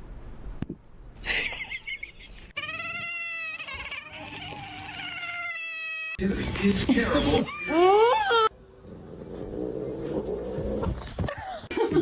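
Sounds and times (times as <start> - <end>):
cat meowing: 2.6 - 6.2.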